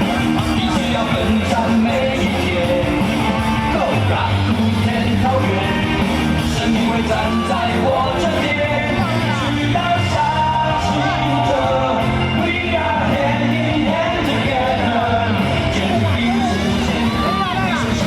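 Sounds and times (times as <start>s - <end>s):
loud rock music with singing: 0.0s - 18.0s
person yelling: 16.2s - 18.0s.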